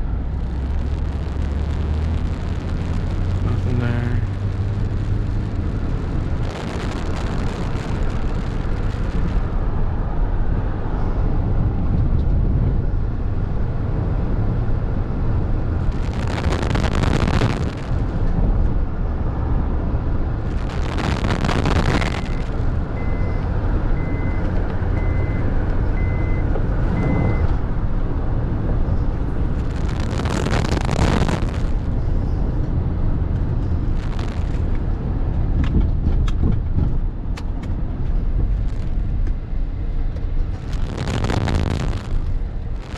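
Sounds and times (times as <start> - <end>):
traffic whooshing past: 0.0 - 12.6
engine and tyre rumble: 0.0 - 42.9
high beeps: 22.0 - 23.4, 25.0 - 25.4, 26.0 - 27.6.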